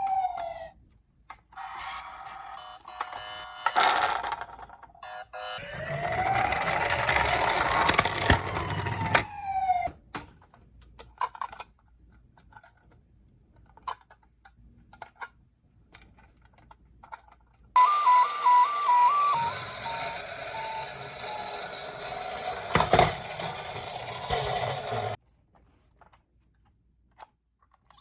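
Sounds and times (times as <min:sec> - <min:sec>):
emergency siren wailing: 0:00.0 - 0:00.8, 0:05.0 - 0:10.0, 0:17.8 - 0:22.7
two-tone ambulance siren: 0:00.0 - 0:00.8, 0:01.6 - 0:04.0, 0:05.0 - 0:10.0, 0:17.8 - 0:25.0.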